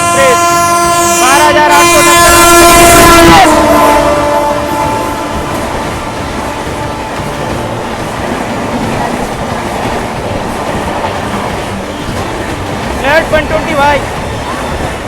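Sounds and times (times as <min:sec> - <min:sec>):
locomotive horn: 0:00.0 - 0:07.9
train rushing past: 0:00.0 - 0:15.0
wheels clattering over rails: 0:04.8 - 0:15.0.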